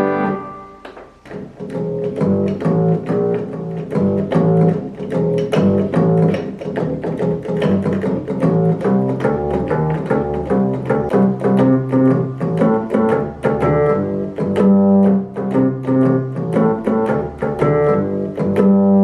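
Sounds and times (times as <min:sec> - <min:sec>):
digital keyboard playing: 0:00.0 - 0:01.2.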